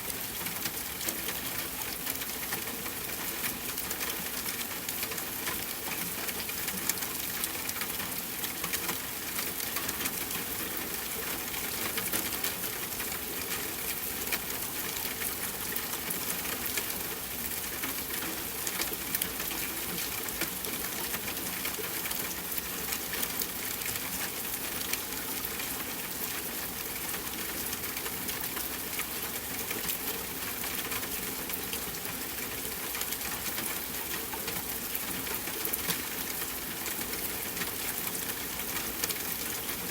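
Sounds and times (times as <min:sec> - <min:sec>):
soft rainfall: 0:00.0 - 0:39.9.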